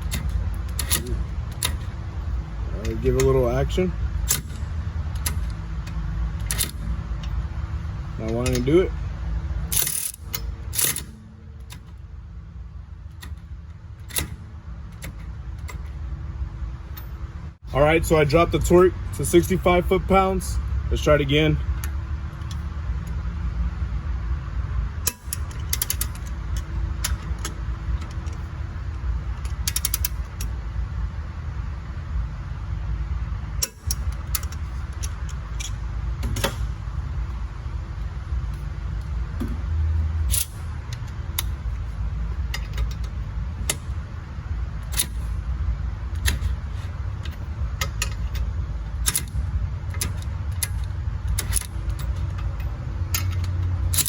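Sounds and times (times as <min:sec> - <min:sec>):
steady low rumble: 0:00.0 - 0:54.0
torque wrench ratcheting and clicking: 0:25.0 - 0:28.4.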